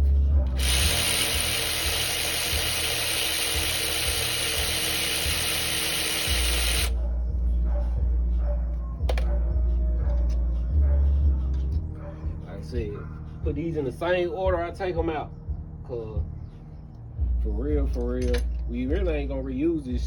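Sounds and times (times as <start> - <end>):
power tool running: 0.0 - 7.0.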